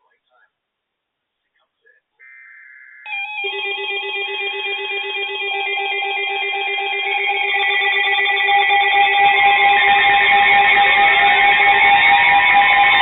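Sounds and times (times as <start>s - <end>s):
warbling two-pitch beeps: 3.0s - 13.0s
fast-pulsing steady tone: 3.1s - 13.0s.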